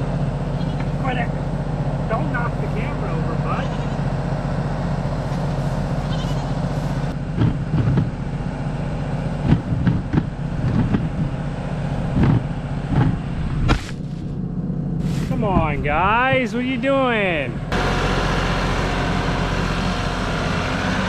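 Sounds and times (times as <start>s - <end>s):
tractor engine running: 0.0s - 21.0s
goats bleating: 0.5s - 1.1s, 2.6s - 4.2s, 5.9s - 6.7s
sharp knocks near microphone: 7.4s - 8.1s, 12.2s - 14.0s.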